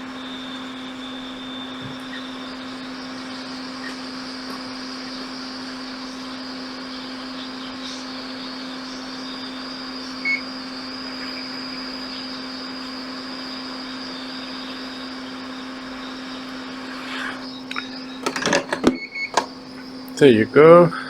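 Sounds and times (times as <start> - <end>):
hot air station blowing hiss: 16.6 - 17.6.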